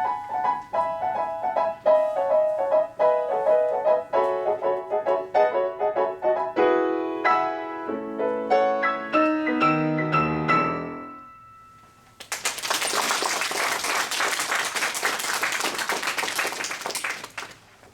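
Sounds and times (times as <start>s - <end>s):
solo piano playing: 0.0s - 12.2s
audience applause: 12.2s - 17.7s.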